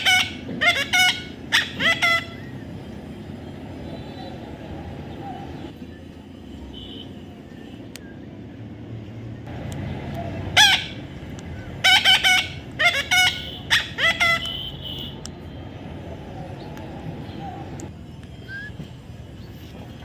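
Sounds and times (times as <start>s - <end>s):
bird giving harsh calls: 0.0s - 2.7s, 10.2s - 15.1s.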